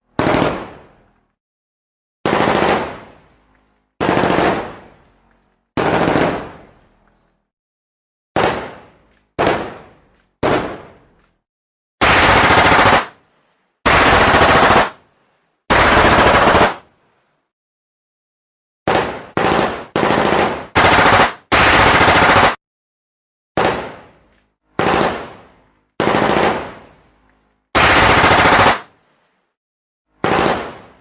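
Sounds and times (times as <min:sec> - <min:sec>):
automatic gunfire bursts: 0:00.2 - 0:00.7, 0:02.2 - 0:03.0, 0:04.0 - 0:04.8, 0:05.8 - 0:06.5, 0:12.0 - 0:13.2, 0:13.9 - 0:15.0, 0:15.7 - 0:16.8, 0:18.9 - 0:22.6, 0:24.8 - 0:25.3, 0:26.0 - 0:26.8, 0:27.8 - 0:28.9, 0:30.2 - 0:30.9.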